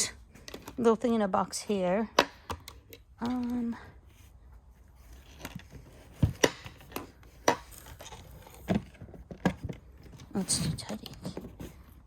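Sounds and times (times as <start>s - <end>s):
knocks and clicks of boxed item: 6.1s - 10.3s.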